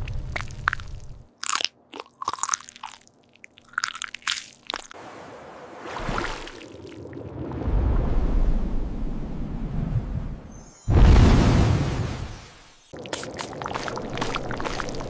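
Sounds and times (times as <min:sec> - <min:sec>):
crunchy biting and chewing: 0:00.0 - 0:05.0.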